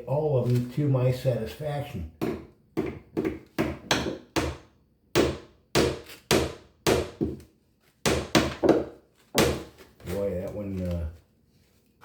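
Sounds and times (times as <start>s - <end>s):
hammer tapping nails into wood: 2.2s - 7.4s, 8.1s - 9.7s.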